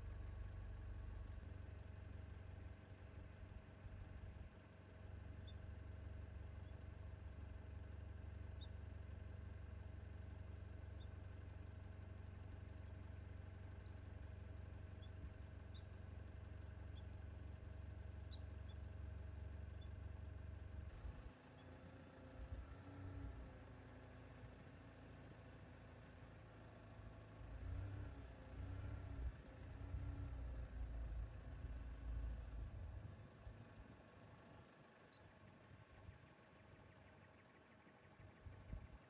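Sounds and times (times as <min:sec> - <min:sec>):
faint low engine hum: 0:00.0 - 0:39.0
small high chirps: 0:13.8 - 0:14.2.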